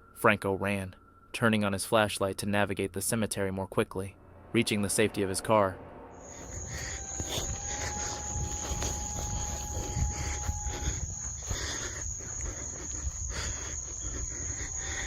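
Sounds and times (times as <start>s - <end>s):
low rumble: 4.0s - 15.0s
crickets trilling: 6.2s - 15.0s.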